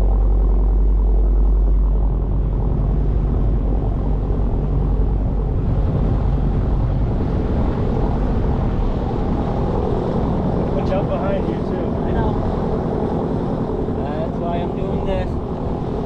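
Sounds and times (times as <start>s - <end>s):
motorboat engine droning: 0.0s - 16.0s.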